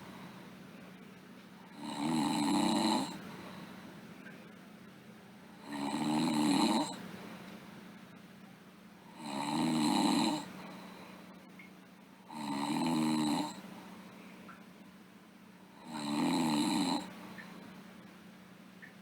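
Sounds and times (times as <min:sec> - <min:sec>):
quiet breathing: 0:00.0 - 0:01.0, 0:01.6 - 0:04.6, 0:09.0 - 0:11.5, 0:12.2 - 0:14.7, 0:15.6 - 0:18.1
girl snoring: 0:01.8 - 0:03.2, 0:05.6 - 0:07.0, 0:09.1 - 0:10.5, 0:12.3 - 0:13.6, 0:15.8 - 0:17.1.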